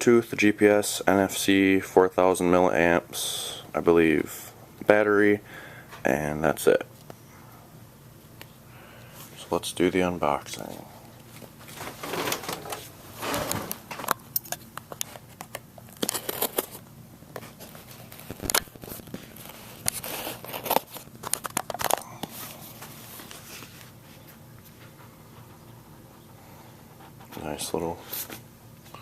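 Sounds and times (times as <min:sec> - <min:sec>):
cardboard packaging crinkling and tearing: 0:11.7 - 0:14.2, 0:15.1 - 0:16.8, 0:17.4 - 0:23.7.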